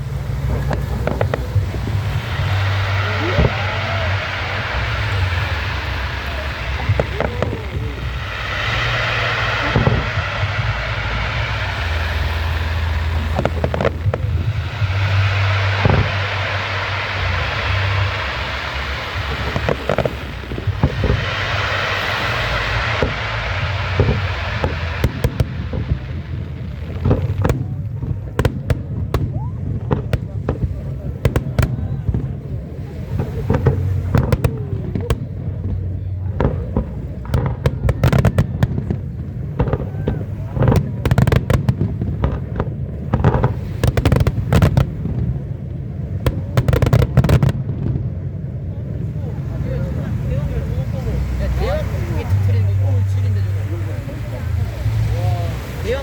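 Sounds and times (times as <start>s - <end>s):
fireworks crackling: 0.0s - 56.0s
low rumble: 0.0s - 56.0s
firework shells bursting: 0.1s - 32.4s.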